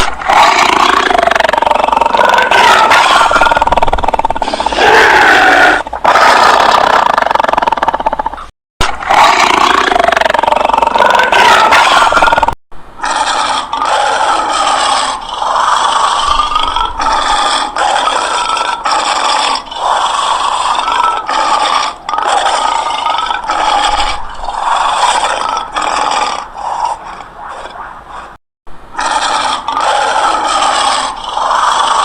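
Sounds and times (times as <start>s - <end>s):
animal making harsh raspy calls: 0.0s - 32.0s.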